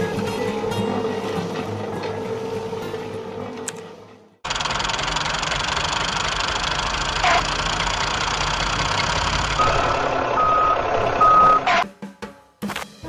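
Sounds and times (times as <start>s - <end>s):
heavy machine engine running: 0.0s - 11.8s
short high beeps: 9.6s - 11.8s.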